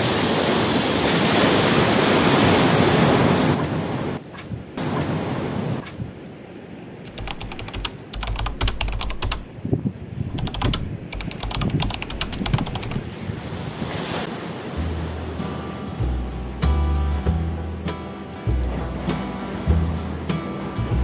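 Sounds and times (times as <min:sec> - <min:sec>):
waves washing against shore: 0:00.0 - 0:06.2, 0:06.8 - 0:21.0
wind buffeting microphone: 0:07.1 - 0:21.0
quick sharp clicks: 0:10.3 - 0:13.0.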